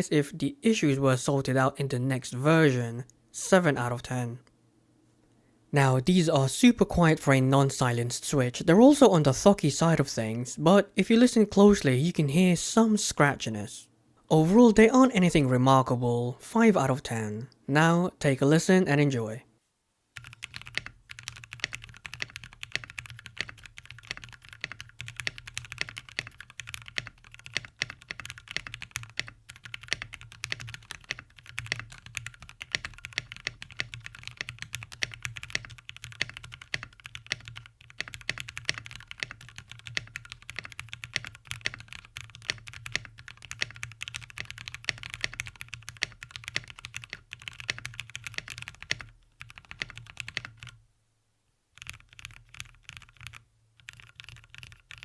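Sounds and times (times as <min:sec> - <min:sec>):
fast typing on mechanical keyboard: 0:20.2 - 0:50.8, 0:51.8 - 0:55.0.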